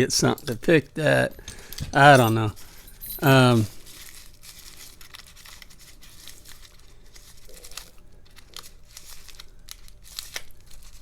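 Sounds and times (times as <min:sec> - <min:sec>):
plastic packaging crinkling: 0:02.6 - 0:11.0.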